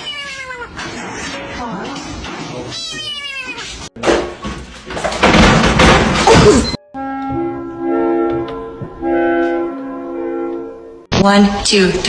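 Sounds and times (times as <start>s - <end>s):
loud clattering crash: 4.0s - 6.6s
simple melody of held notes: 6.8s - 11.0s.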